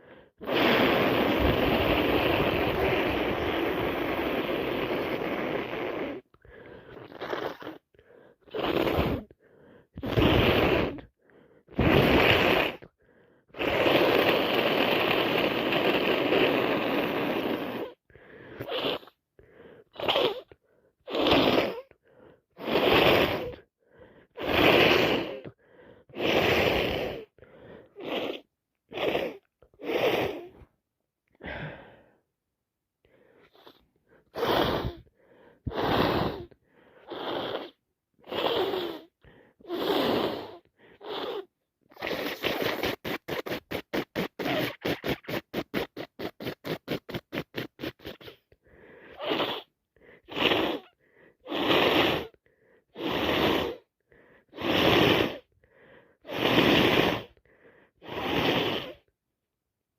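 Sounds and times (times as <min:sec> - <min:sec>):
sharp breaths: 0:17.6 - 0:30.7, 0:31.3 - 0:32.3, 0:33.0 - 0:59.1.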